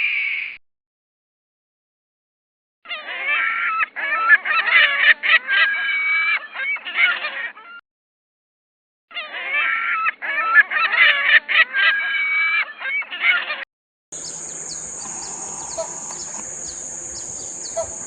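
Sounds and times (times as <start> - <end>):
hornbill calling: 14.2 - 18.0.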